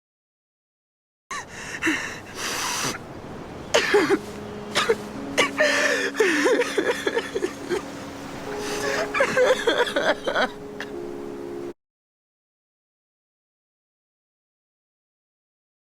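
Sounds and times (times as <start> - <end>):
background music: 3.8 - 11.8.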